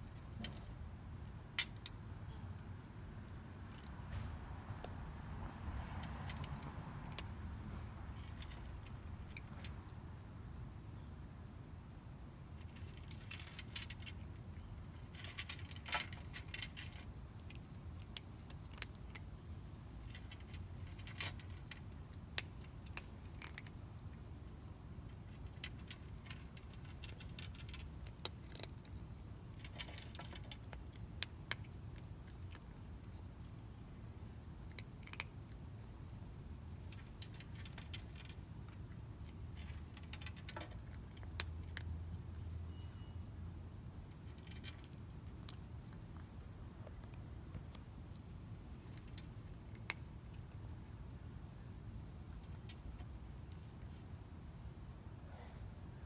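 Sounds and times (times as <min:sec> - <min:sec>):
cat crunching dry food: 0:00.0 - 0:10.4, 0:12.4 - 0:42.6, 0:43.6 - 0:54.7
low steady rumble: 0:00.0 - 0:56.0.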